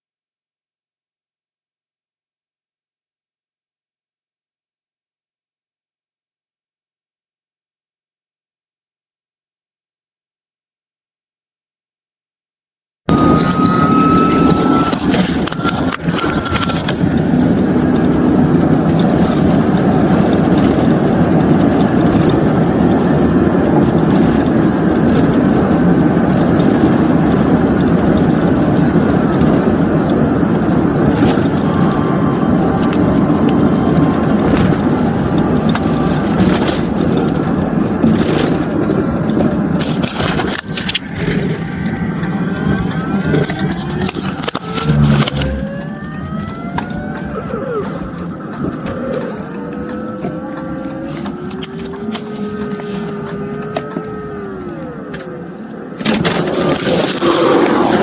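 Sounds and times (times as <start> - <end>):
vehicle road noise rumble: 13.1 - 58.0.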